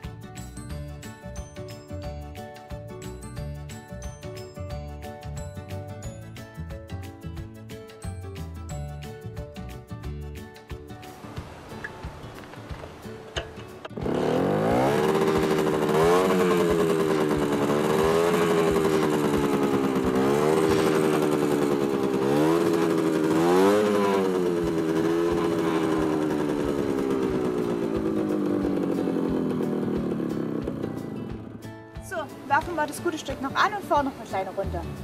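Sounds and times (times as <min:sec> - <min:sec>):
moped engine revving: 0:11.2 - 0:31.6.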